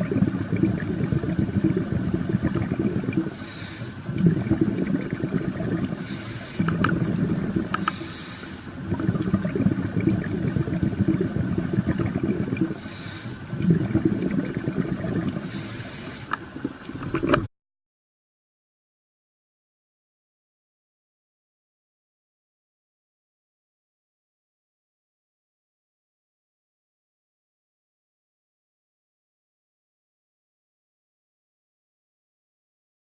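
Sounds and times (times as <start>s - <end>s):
hissing surge of water: 0.0s - 17.0s
sea water churning: 0.0s - 17.5s.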